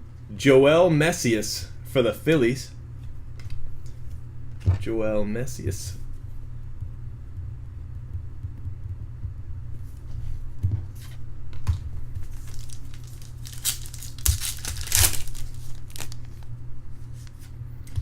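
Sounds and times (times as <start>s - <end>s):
steady low hum: 0.0s - 18.0s
foil wrappers tearing and crinkling: 12.2s - 16.5s.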